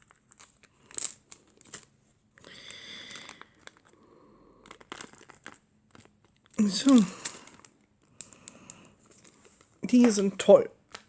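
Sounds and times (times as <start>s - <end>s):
plastic packaging crinkling: 0.0s - 11.0s
light clicks of small pieces: 4.6s - 10.2s.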